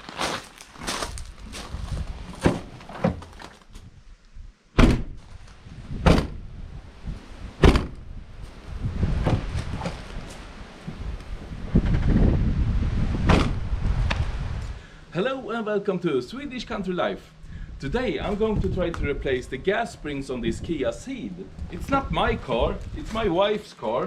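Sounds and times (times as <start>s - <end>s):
knocks and thuds on car panels: 2.4s - 3.3s, 4.8s - 5.3s, 6.0s - 6.4s, 7.6s - 8.0s, 9.2s - 10.0s, 13.3s - 13.6s
car panels slamming: 2.4s - 3.5s, 4.8s - 5.3s, 6.0s - 6.4s, 7.6s - 8.0s, 9.2s - 10.0s, 13.2s - 13.6s
low rumble: 3.8s - 14.9s, 16.4s - 23.3s.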